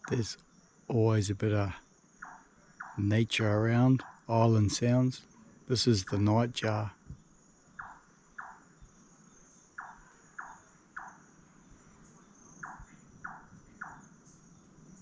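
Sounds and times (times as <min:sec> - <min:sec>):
crickets chirring: 0:00.0 - 0:15.0
nightjar knocking calls: 0:02.2 - 0:03.1, 0:03.8 - 0:04.4, 0:07.7 - 0:08.9, 0:09.6 - 0:11.3, 0:12.4 - 0:14.5.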